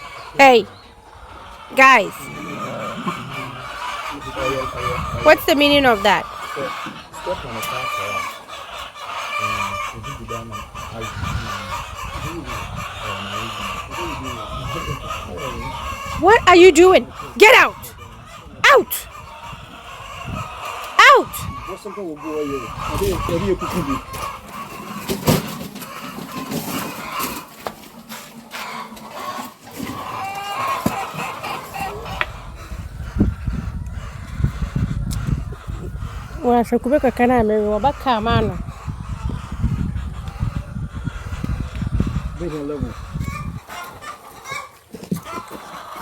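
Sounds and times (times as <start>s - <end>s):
chickens clucking: 0.0s - 46.0s.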